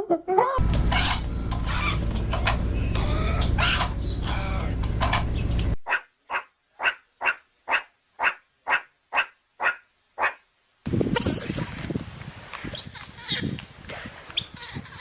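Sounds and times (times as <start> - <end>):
low hum: 0.6 - 5.8
voices: 0.6 - 5.8
dog barking: 5.9 - 10.4.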